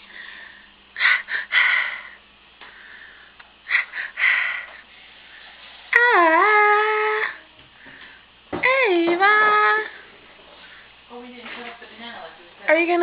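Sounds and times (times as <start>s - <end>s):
person huffing breaths: 0.0s - 5.4s.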